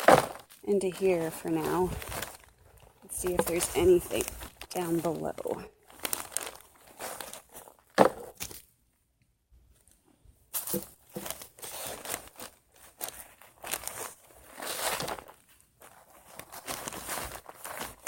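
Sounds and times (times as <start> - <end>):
soil scraping and crunching: 0.0 - 7.8.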